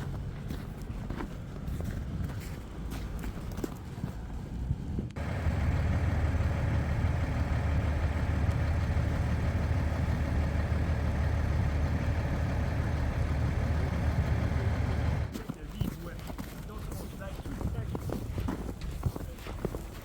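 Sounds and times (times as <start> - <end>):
vehicle engine running: 5.2 - 16.2.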